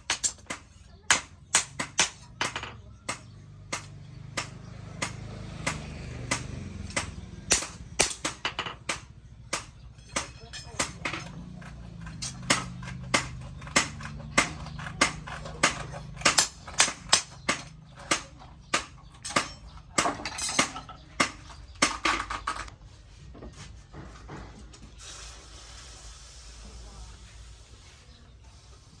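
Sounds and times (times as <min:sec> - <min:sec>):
hammer striking metal: 0:00.0 - 0:22.2
steady hiss: 0:25.0 - 0:29.0.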